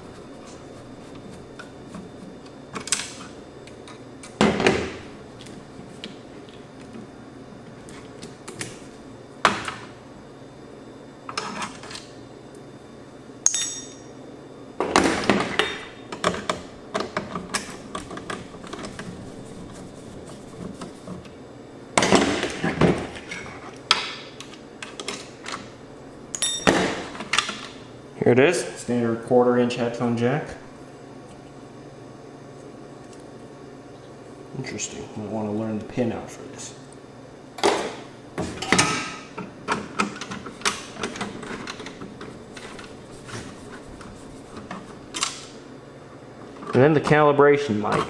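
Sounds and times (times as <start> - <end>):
tools clicking and clinking on parts: 13.4 - 14.1.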